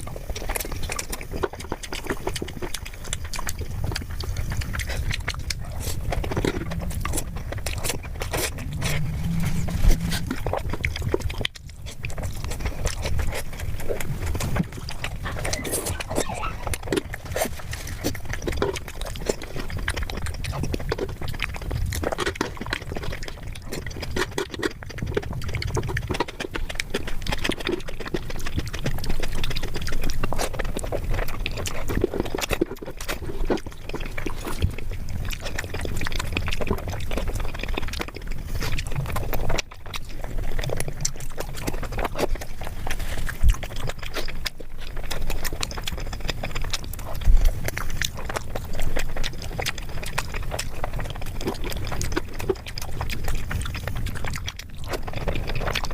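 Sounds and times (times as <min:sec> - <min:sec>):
person chewing food: 0:00.0 - 0:55.9.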